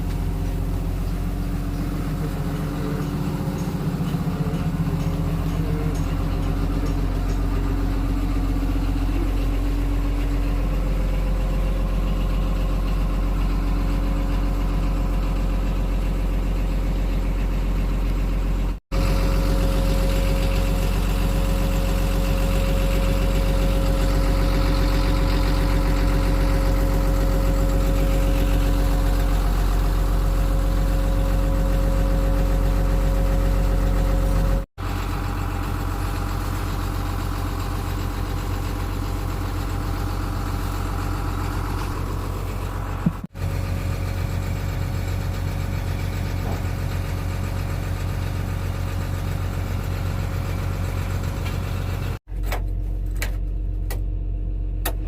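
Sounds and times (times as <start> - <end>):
diesel engine idling: 0.0 - 55.0.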